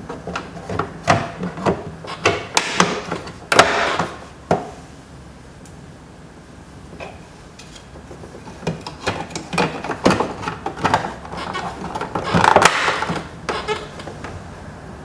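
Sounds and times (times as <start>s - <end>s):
plastic door trim scraping: 0.0s - 4.3s, 8.4s - 14.4s.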